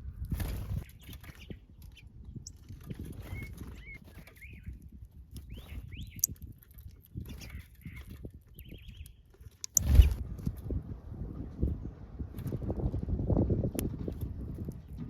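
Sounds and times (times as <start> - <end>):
small birds chirping: 0.1 - 10.2.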